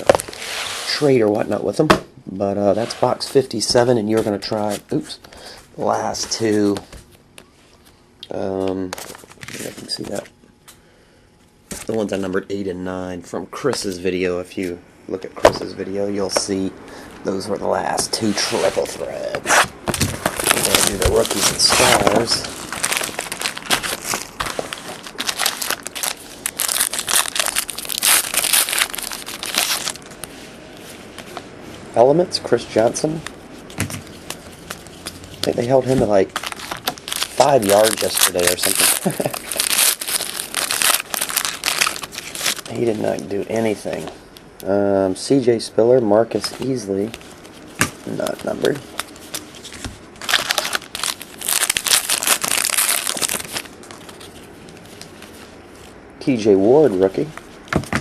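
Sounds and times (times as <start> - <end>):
foil wrapper crinkling and tearing: 20.2 - 30.3, 34.0 - 43.3, 46.4 - 55.4.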